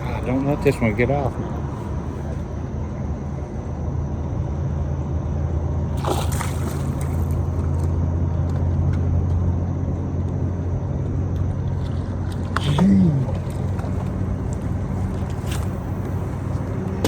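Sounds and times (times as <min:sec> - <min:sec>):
fish splashing in water: 0:05.9 - 0:07.9.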